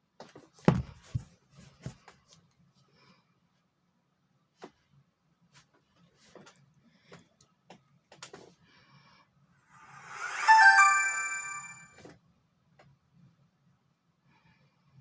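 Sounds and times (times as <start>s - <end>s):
smartphone startup chime: 9.8s - 11.9s.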